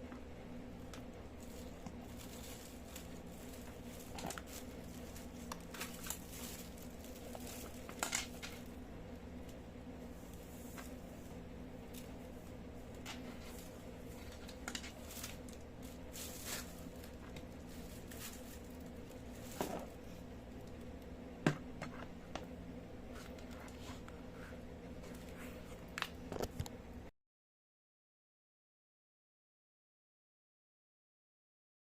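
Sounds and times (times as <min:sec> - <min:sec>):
low electrical hum: 0:00.0 - 0:27.1
packaging clicks and rustles: 0:01.0 - 0:08.7.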